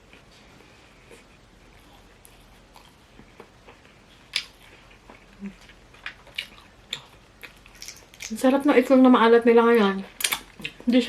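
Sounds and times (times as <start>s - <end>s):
quiet chewing: 0.0s - 8.4s.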